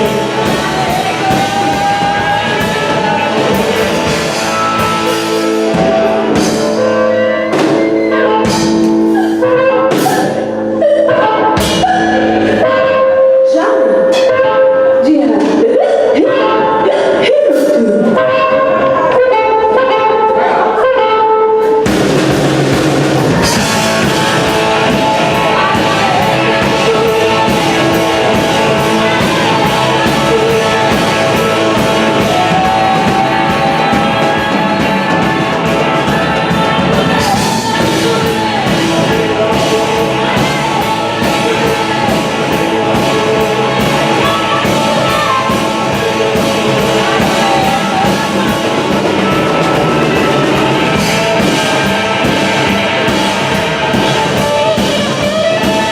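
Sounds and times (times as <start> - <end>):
blues-rock band playing: 0.0 - 55.9.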